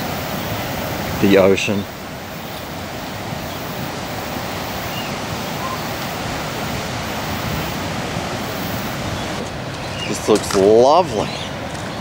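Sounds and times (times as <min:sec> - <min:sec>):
ocean waves breaking on beach: 0:00.0 - 0:12.0.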